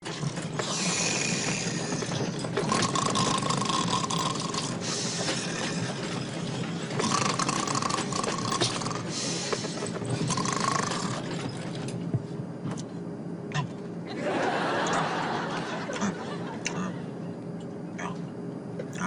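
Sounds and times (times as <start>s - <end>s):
mechanical-sounding rattle: 0.0s - 12.0s
loud snoring: 0.6s - 6.1s, 7.0s - 11.5s.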